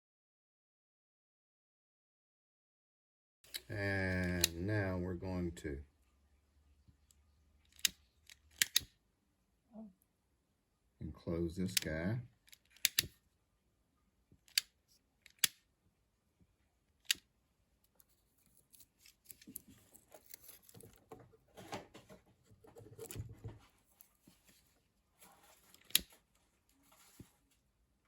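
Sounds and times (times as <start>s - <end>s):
sharp clicks: 7.0s - 9.0s, 12.5s - 13.2s, 14.4s - 15.6s
rustling handling noise: 17.8s - 27.9s.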